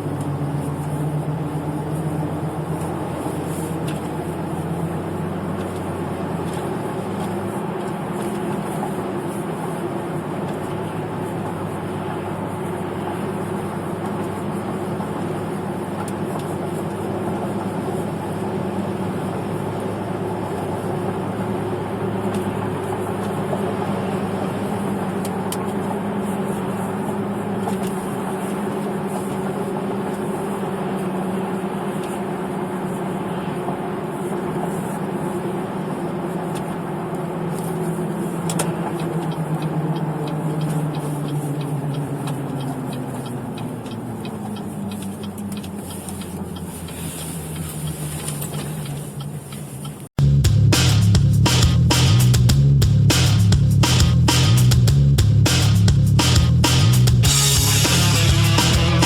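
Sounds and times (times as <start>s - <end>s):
road noise: 0.0s - 59.0s
tyre droning hum: 50.2s - 59.0s.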